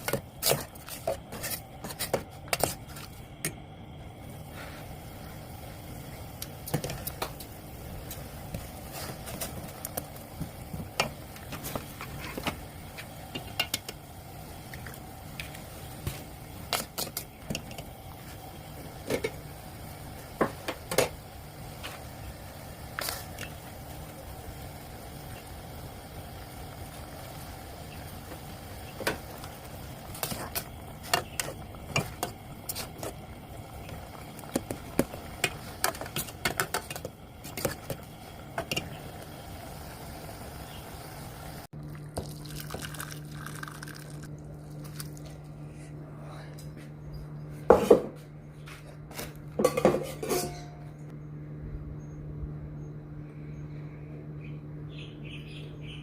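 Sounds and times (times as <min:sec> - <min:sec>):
low hum: 0:00.0 - 0:56.0
utensils clinking on cookware: 0:49.6 - 0:51.0.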